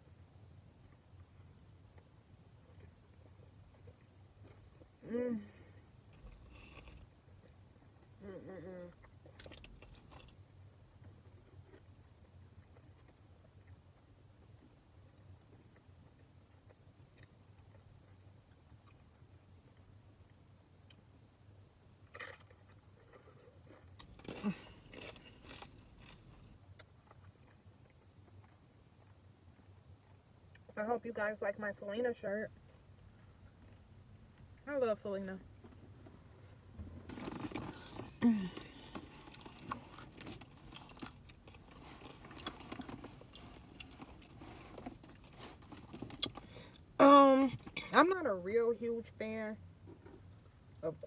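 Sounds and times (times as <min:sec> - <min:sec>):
bite and crunch: 0:06.1 - 0:07.2, 0:08.6 - 0:19.9, 0:22.0 - 0:30.8, 0:37.0 - 0:47.0
person chewing food: 0:06.1 - 0:08.0, 0:08.7 - 0:19.9, 0:22.1 - 0:30.7, 0:32.5 - 0:34.7, 0:35.5 - 0:47.0.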